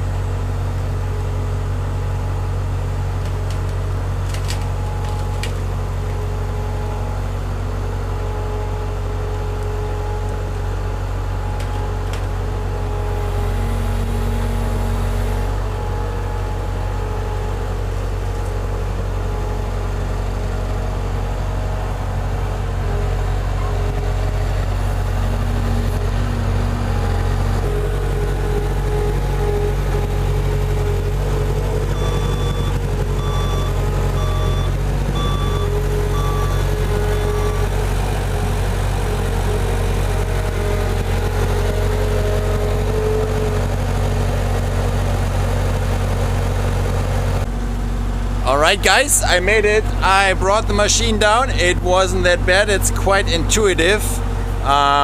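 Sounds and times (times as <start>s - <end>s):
skid steer engine running: 0.0s - 55.0s
backup alarm beeps: 31.9s - 36.7s.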